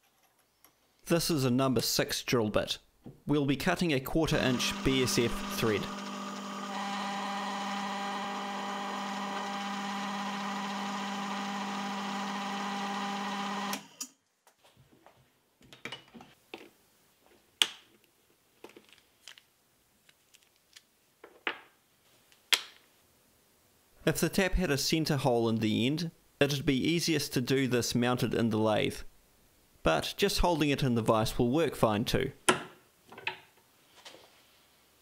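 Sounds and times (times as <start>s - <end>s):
drill motor humming: 4.4s - 14.0s.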